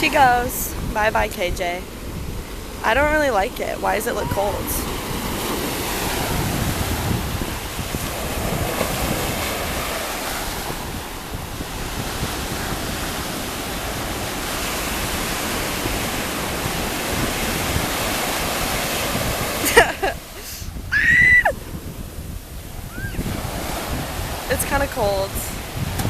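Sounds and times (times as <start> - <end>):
ocean surf washing up: 0.0 - 26.0
wind buffeting microphone: 0.0 - 26.0
high-pitched falling cry: 20.9 - 21.6.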